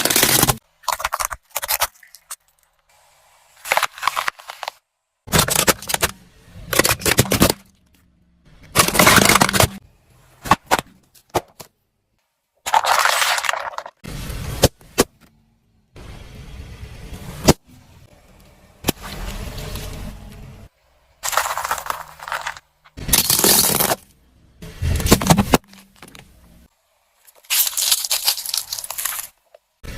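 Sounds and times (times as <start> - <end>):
objects crunching under car tyres: 12.6 - 14.0, 21.2 - 24.1, 27.2 - 29.7.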